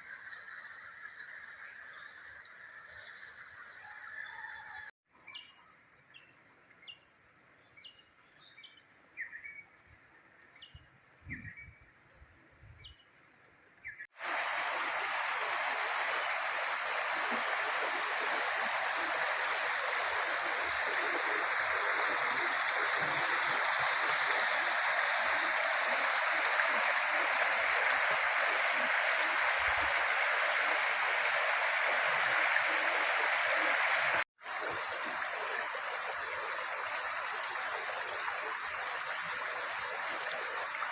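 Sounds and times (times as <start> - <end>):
floodwater rushing: 14.2 - 40.9.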